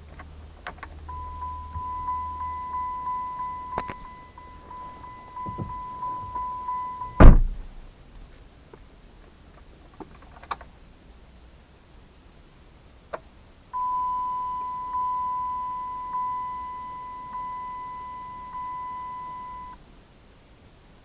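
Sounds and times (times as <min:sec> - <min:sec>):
car warning chime: 0:01.1 - 0:07.4, 0:13.8 - 0:19.8.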